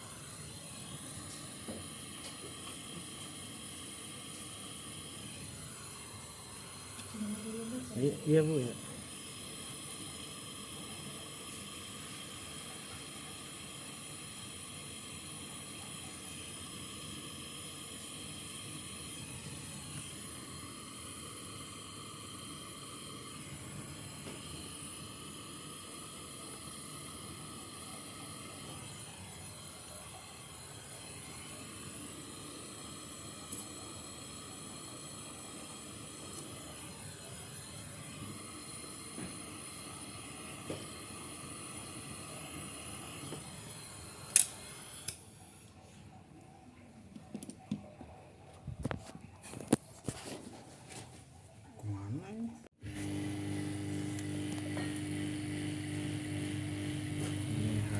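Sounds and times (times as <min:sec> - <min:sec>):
steady hissing: 0:00.0 - 0:45.8.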